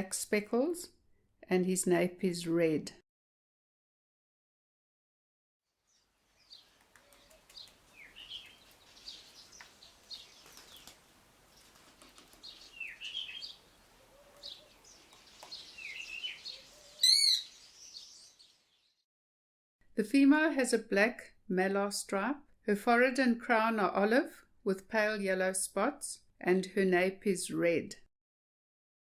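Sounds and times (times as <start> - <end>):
birds chirping: 5.9 - 19.0
loud sharp bird call: 12.4 - 18.4.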